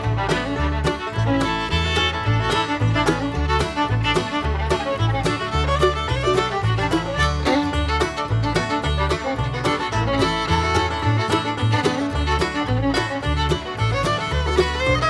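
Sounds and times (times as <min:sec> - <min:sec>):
upbeat bluegrass instrumental: 0:00.0 - 0:15.0.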